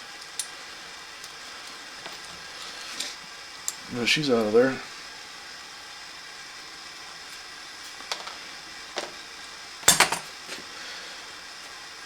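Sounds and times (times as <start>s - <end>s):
metal parts clattering: 9.8s - 10.3s.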